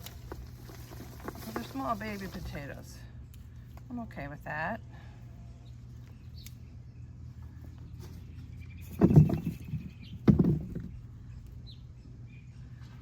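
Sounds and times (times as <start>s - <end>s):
rustling and scraping of soil: 0.0s - 4.3s, 7.2s - 11.7s.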